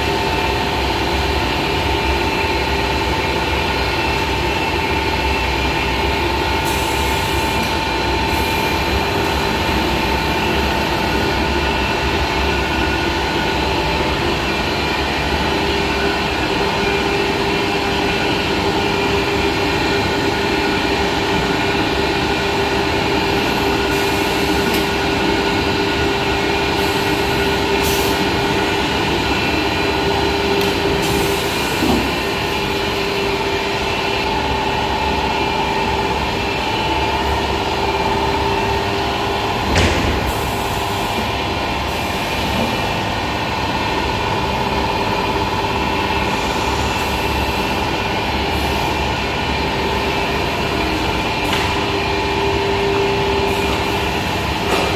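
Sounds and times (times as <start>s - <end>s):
machining center humming and whining: 0.0s - 54.9s
sharp mechanical clunk: 39.7s - 40.3s.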